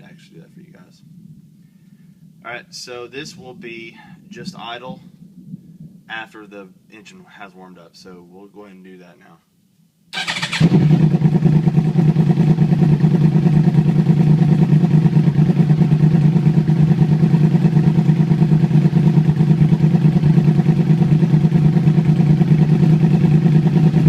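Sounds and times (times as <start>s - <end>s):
motorcycle engine idling: 10.2s - 24.0s.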